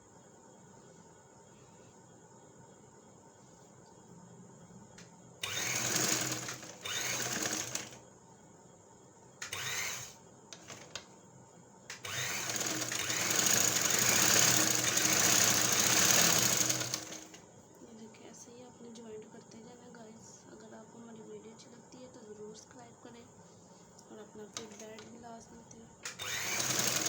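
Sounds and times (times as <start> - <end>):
sewing machine stitching: 5.4 - 8.0, 9.4 - 11.0, 11.9 - 17.4, 24.6 - 25.0, 26.0 - 27.0.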